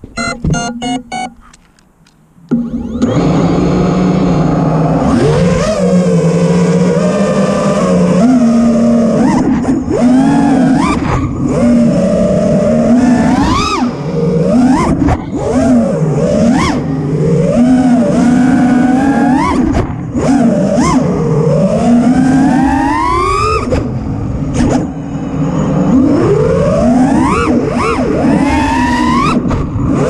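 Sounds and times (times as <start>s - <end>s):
propellers whining: 0.0s - 19.6s
quadcopter motors whining: 2.5s - 30.0s.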